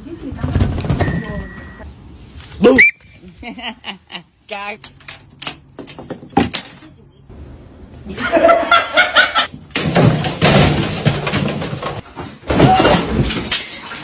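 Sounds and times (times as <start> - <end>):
people laughing loudly: 8.0 - 9.5.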